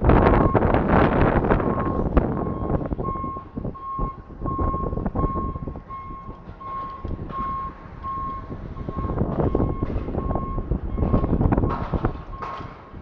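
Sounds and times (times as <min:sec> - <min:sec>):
low rumble: 0:00.0 - 0:13.0
vehicle reversing beeper: 0:00.3 - 0:13.0.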